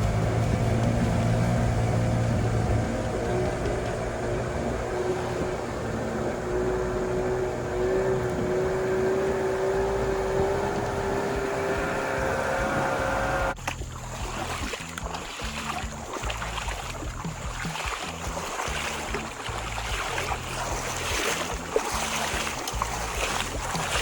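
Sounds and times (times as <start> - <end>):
boat engine droning: 0.0 - 24.0.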